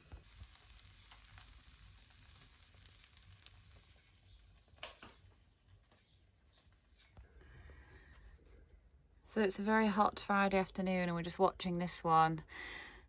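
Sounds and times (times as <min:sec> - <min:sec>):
batter sizzling in a pan: 0:00.0 - 0:07.2.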